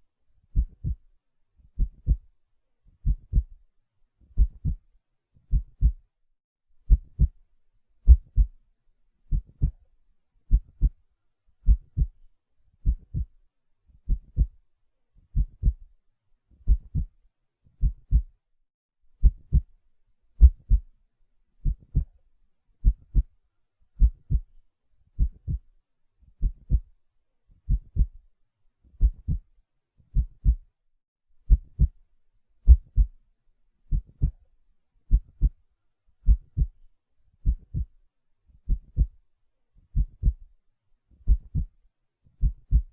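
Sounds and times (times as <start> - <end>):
heartbeat thumping: 0.6 - 1.0, 1.8 - 2.2, 3.0 - 3.5, 4.4 - 4.8, 5.5 - 6.0, 6.9 - 7.4, 8.1 - 8.5, 9.3 - 9.8, 10.5 - 10.9, 11.6 - 12.1, 12.8 - 13.3, 14.1 - 14.5, 15.4 - 15.8, 16.7 - 17.1, 17.8 - 18.3, 20.4 - 20.8, 21.6 - 22.1, 22.8 - 23.3, 24.0 - 24.5, 25.2 - 25.6, 26.4 - 26.8, 27.7 - 28.1, 29.0 - 29.4, 30.2 - 30.6, 31.5 - 32.0, 32.7 - 33.1, 33.9 - 34.3, 35.1 - 35.5, 36.2 - 36.7, 37.4 - 37.9, 38.7 - 39.1, 40.0 - 40.4, 41.3 - 41.7, 42.4 - 42.9.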